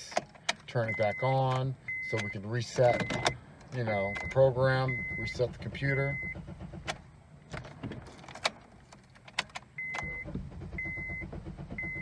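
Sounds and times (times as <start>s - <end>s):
dashboard warning chime beeping: 0.0s - 6.6s, 9.7s - 12.0s
ignition key clicks: 0.0s - 12.0s
low mechanical rumble: 3.3s - 12.0s.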